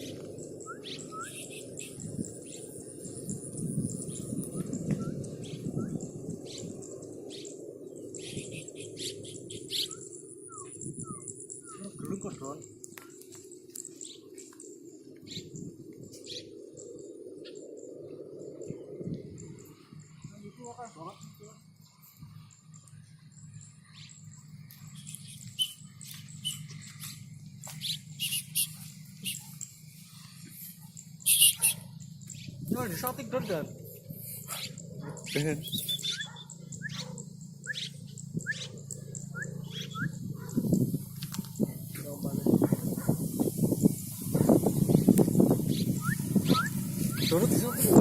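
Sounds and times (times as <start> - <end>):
bird chirping: 0.0 - 48.0
steady low hum: 0.0 - 48.0
bird short sharp chirps: 24.9 - 27.2, 27.8 - 29.7, 30.8 - 32.6, 34.3 - 40.2.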